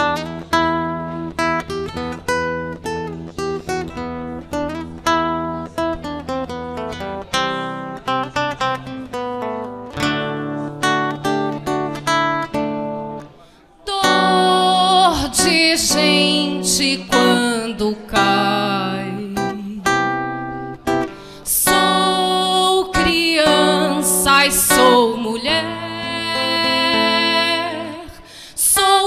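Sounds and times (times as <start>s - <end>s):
acoustic guitar strumming: 0.0s - 29.0s
person singing: 13.8s - 29.0s.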